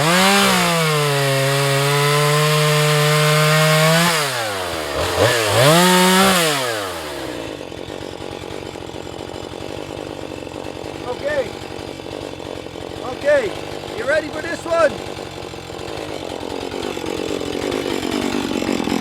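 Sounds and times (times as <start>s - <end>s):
chainsaw revving and idling: 0.0s - 19.0s.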